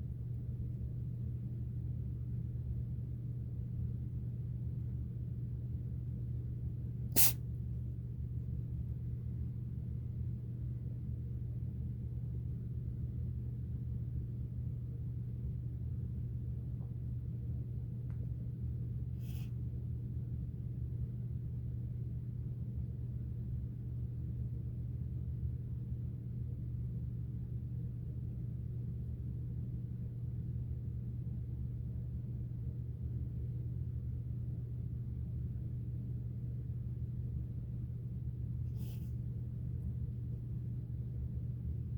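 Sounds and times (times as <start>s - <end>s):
steady low hum: 0.0s - 41.9s
cat sneezing: 7.2s - 7.4s, 19.2s - 19.5s, 38.7s - 39.2s.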